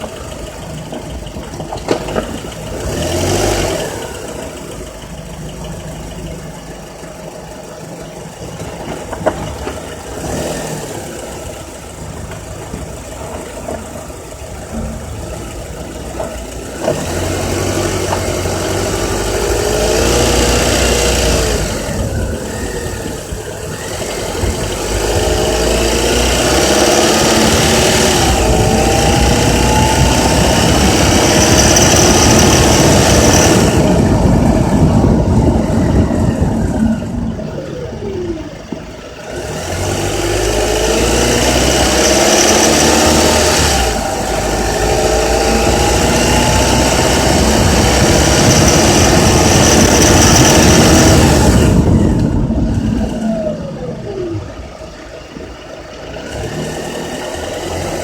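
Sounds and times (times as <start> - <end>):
car engine revving with rattle: 0.0 - 58.0.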